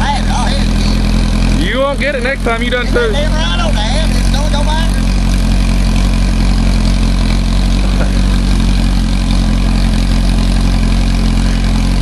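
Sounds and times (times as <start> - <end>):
buggy engine running steadily: 0.0 - 12.0.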